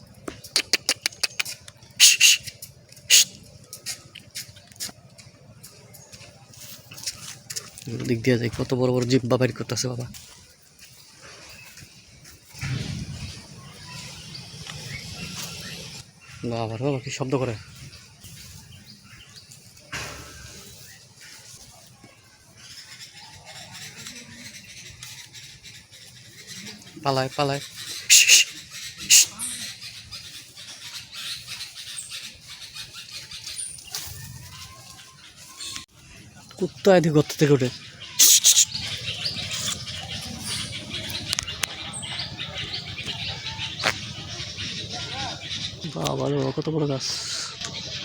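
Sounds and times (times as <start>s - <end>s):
low outdoor background: 0.0s - 48.0s
small birds chirping: 0.0s - 48.0s
lizard hissing loudly: 2.0s - 2.5s, 3.1s - 3.3s, 28.1s - 29.4s, 38.2s - 39.8s.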